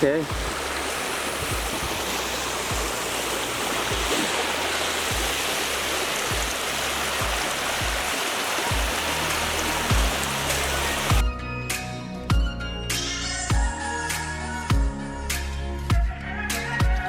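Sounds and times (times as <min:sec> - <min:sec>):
dull low thumps: 0:00.0 - 0:09.1
waterfall rushing: 0:00.0 - 0:11.2.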